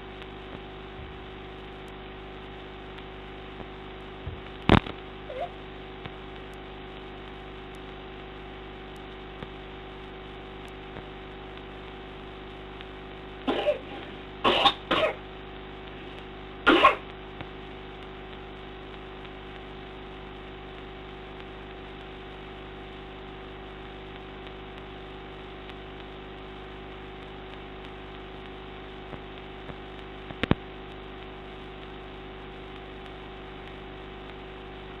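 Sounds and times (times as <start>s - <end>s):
steady electrical hum: 0.0s - 35.0s
person coughing: 13.5s - 15.2s, 16.7s - 17.0s.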